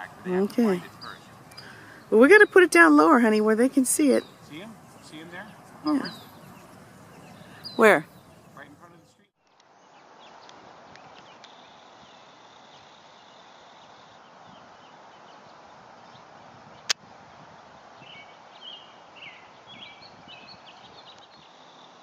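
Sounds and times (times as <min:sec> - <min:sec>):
songbird chirps: 0:00.0 - 0:17.0, 0:18.0 - 0:22.0.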